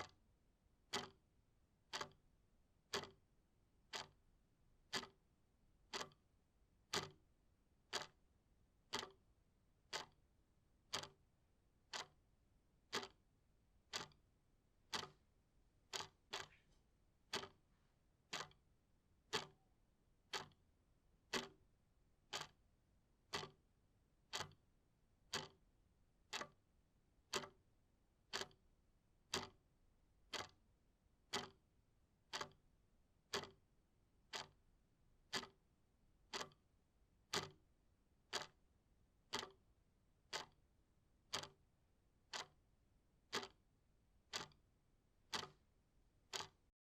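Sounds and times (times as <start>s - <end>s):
clock ticking: 0.9s - 1.2s, 1.9s - 2.2s, 2.9s - 3.2s, 3.9s - 4.2s, 4.9s - 5.2s, 5.9s - 6.2s, 6.9s - 7.2s, 7.9s - 8.2s, 8.9s - 9.2s, 9.9s - 10.2s, 10.9s - 11.2s, 11.9s - 12.2s, 12.9s - 13.2s, 13.9s - 14.2s, 14.9s - 15.2s, 15.9s - 16.6s, 17.3s - 17.6s, 18.3s - 18.6s, 19.3s - 19.6s, 20.3s - 20.6s, 21.3s - 21.6s, 22.3s - 22.6s, 23.3s - 23.6s, 24.3s - 24.6s, 25.3s - 25.6s, 26.3s - 26.6s, 27.3s - 27.6s, 28.3s - 28.6s, 29.3s - 29.6s, 30.3s - 30.6s, 31.3s - 31.6s, 32.3s - 32.6s, 33.3s - 33.6s, 34.3s - 34.6s, 35.3s - 35.6s, 36.3s - 36.6s, 37.3s - 37.6s, 38.3s - 38.6s, 39.3s - 39.6s, 40.3s - 40.6s, 41.3s - 41.6s, 42.3s - 42.6s, 43.3s - 43.6s, 44.3s - 44.6s, 45.3s - 45.6s, 46.3s - 46.7s.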